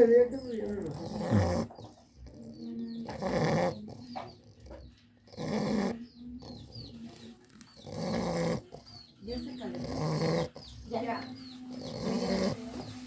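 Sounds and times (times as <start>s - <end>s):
dog snoring: 0.7s - 13.0s.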